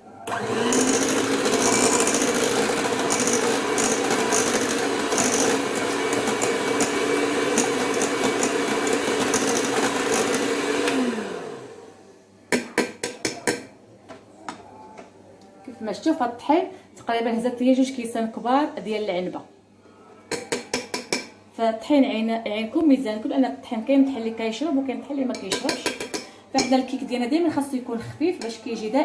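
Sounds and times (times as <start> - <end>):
electric hand mixer beating: 0.3 - 11.9.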